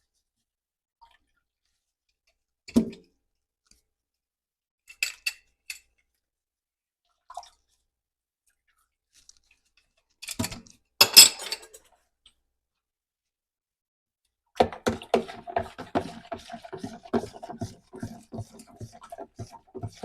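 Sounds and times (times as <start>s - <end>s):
clatter of dishes: 10.3s - 11.8s
dishes knocking: 14.6s - 20.0s.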